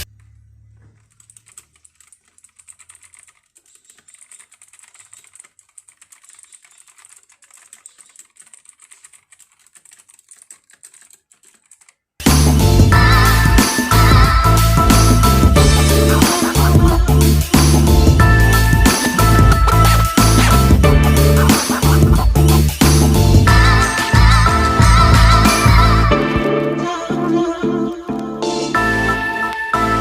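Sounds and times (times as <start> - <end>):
mechanical keyboard clicking: 1.0 - 12.0
background music: 12.2 - 30.0.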